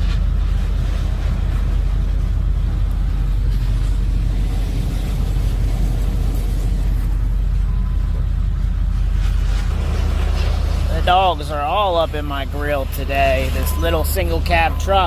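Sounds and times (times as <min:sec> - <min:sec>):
truck engine idling: 0:00.0 - 0:15.0.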